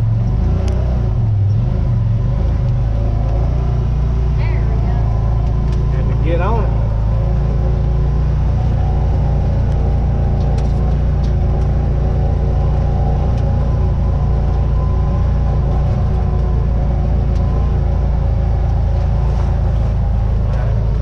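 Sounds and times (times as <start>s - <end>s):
off-road vehicle engine droning: 0.0s - 21.0s.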